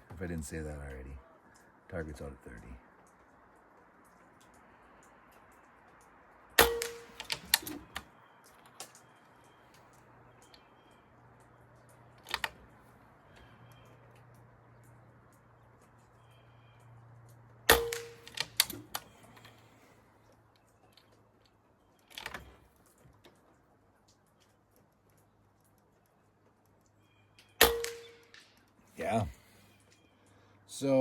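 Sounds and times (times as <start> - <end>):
air rifle shots: 6.6 - 8.0, 17.7 - 19.1, 27.6 - 28.5
rifle lever clicking: 6.6 - 8.0, 12.2 - 12.6, 17.7 - 19.1.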